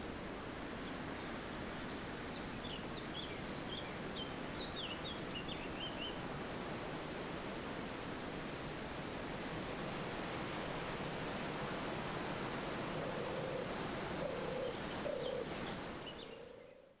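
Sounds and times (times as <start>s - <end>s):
wind rushing through trees: 0.0s - 17.0s
low bird calls: 13.1s - 16.9s.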